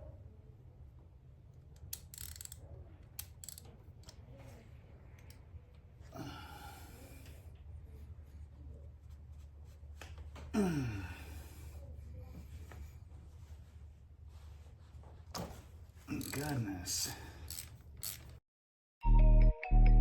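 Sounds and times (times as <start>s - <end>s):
long loud sigh: 6.1s - 7.3s, 10.6s - 11.8s
person exhaling heavily: 6.1s - 7.4s, 10.6s - 11.8s
hand tools clicking and scraping: 16.1s - 16.6s, 17.4s - 18.4s.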